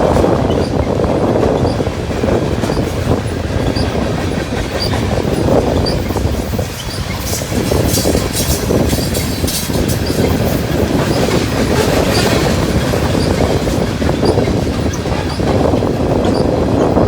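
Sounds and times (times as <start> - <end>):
train wheels clattering over rails: 0.0 - 17.0
high wheel squeals: 4.7 - 17.0.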